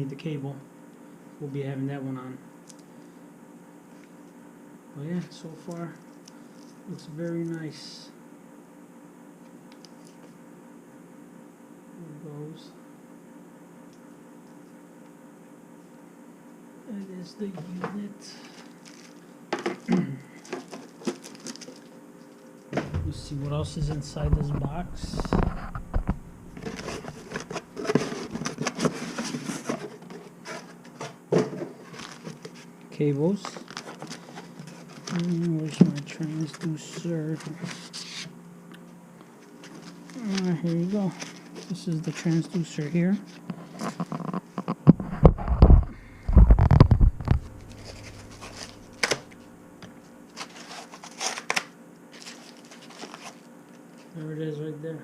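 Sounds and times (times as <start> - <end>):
packaging crinkling: 18.5 - 19.8, 20.4 - 22.5, 33.5 - 35.5, 45.4 - 49.5, 50.3 - 53.5
packaging rubbing and knocking: 22.8 - 32.5, 43.9 - 49.4
rustling in cardboard box: 23.9 - 31.0, 52.1 - 53.4.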